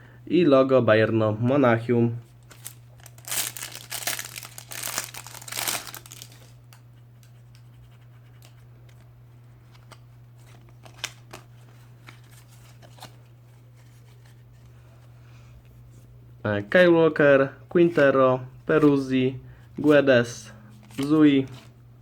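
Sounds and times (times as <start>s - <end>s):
foil packet tearing and crinkling: 2.4s - 6.6s.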